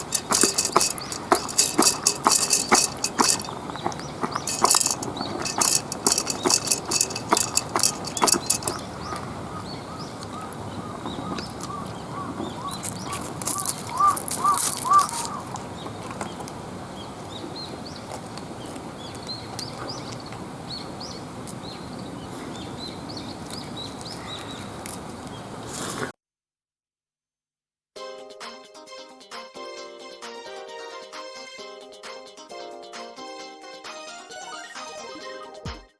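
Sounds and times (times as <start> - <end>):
clinks: 0.0 - 9.3
bird chirping: 0.0 - 25.5.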